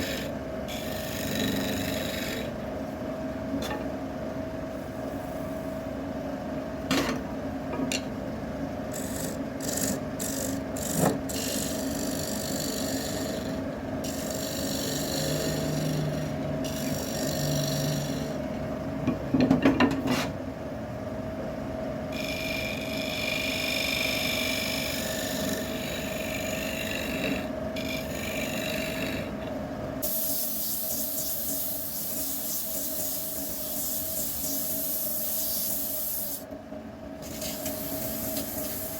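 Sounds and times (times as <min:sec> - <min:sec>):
wood lathe humming: 0:00.0 - 0:02.6, 0:08.9 - 0:18.4.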